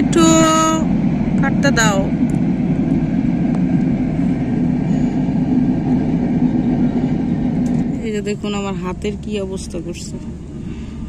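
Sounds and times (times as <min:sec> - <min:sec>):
low rumbling: 0:00.0 - 0:11.0.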